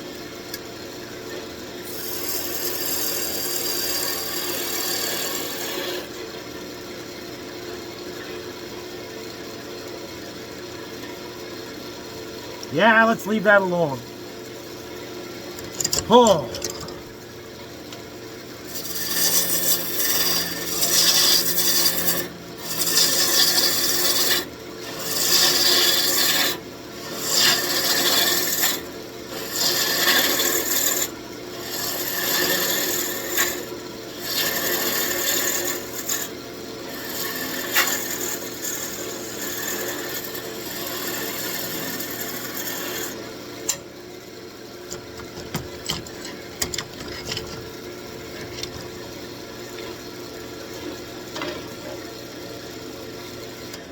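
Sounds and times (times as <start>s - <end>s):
gouge cutting spinning wood: 2.0s - 6.0s, 18.7s - 26.6s, 27.3s - 28.8s, 34.2s - 36.2s, 36.9s - 43.1s
wood lathe running: 2.0s - 6.0s, 18.7s - 26.6s, 27.2s - 33.6s, 34.2s - 36.2s, 36.9s - 43.1s.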